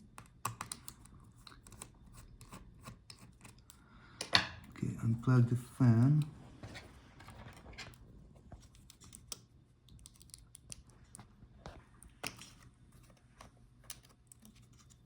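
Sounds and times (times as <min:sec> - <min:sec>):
low steady hum: 0:00.0 - 0:15.0
small clicks and taps in laptop: 0:00.1 - 0:03.8, 0:07.8 - 0:12.6.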